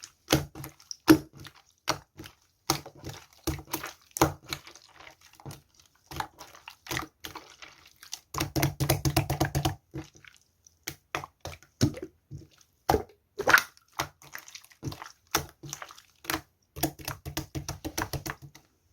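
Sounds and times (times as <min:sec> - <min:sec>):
slime squeezed by hand: 0:13.4 - 0:14.7.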